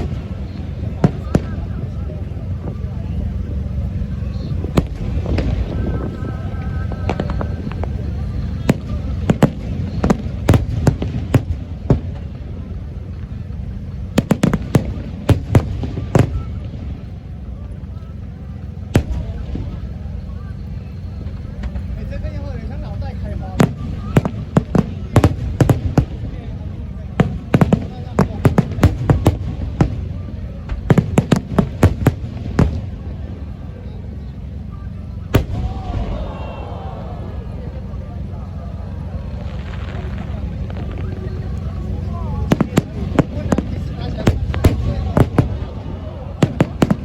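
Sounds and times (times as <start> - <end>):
fireworks bangs: 0.0 - 47.0
low rumble: 0.0 - 47.0
firework shells bursting: 37.1 - 47.0.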